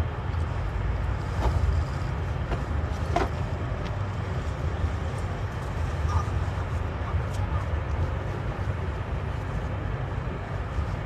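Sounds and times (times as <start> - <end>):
road traffic rumble: 0.0 - 11.0.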